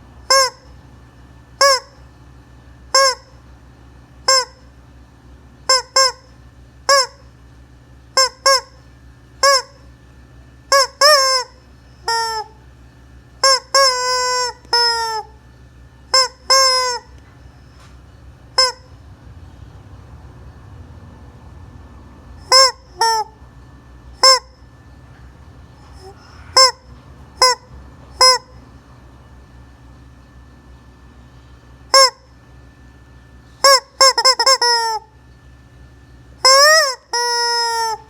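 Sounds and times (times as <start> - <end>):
chicken honking calls: 0.3 - 0.8, 10.7 - 12.5, 13.4 - 15.4, 16.1 - 17.3, 18.5 - 19.0, 22.4 - 23.4, 24.2 - 24.8, 25.8 - 28.6, 33.6 - 35.1, 36.4 - 38.0.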